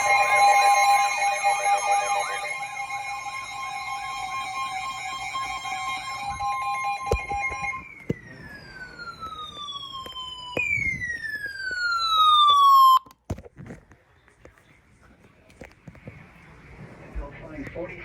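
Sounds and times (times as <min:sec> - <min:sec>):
two-note alert tone: 0:00.0 - 0:07.8
falling electronic tones: 0:00.0 - 0:13.0
warbling siren-like tone: 0:00.0 - 0:13.0.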